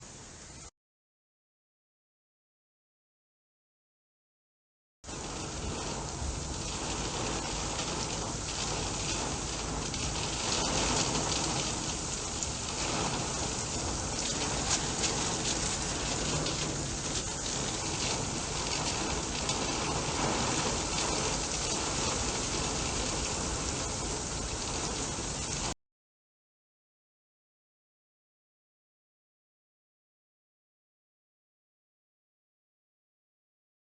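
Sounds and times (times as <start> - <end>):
heavy rain pouring: 5.0 - 25.8.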